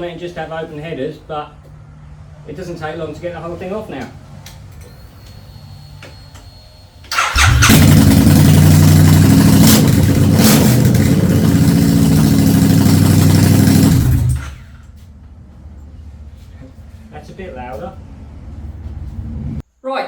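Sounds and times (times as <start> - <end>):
loud motorcycle engine: 7.1 - 17.0.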